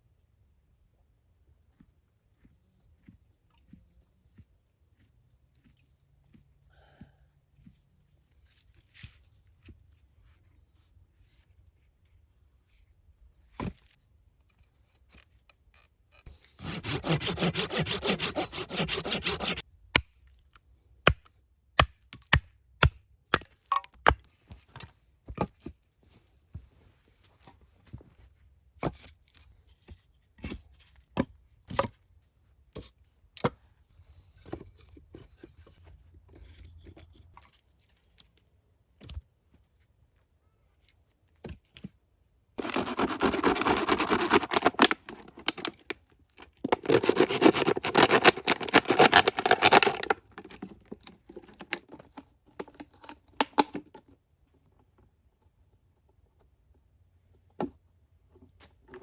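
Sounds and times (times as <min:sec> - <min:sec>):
loud tearing and crackling: 0:16.6 - 0:19.6, 0:42.6 - 0:45.9, 0:46.6 - 0:50.6.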